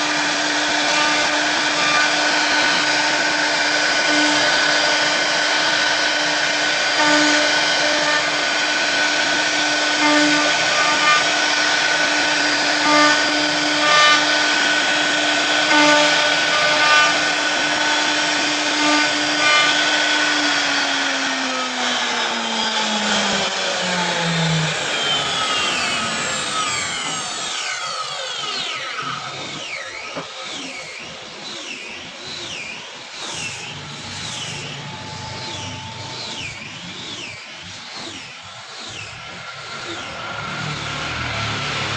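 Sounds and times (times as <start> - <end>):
router spindle whining: 0.0 - 41.9
spindle spinning down: 22.6 - 41.9.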